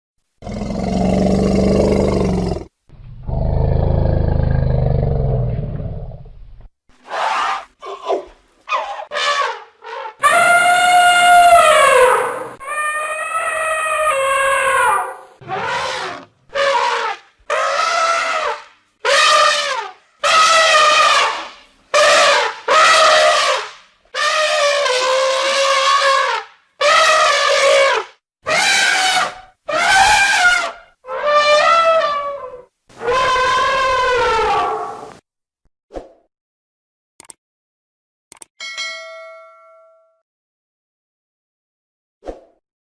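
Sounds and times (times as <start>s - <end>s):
elephant calling: 7.1s - 23.6s, 24.2s - 35.0s.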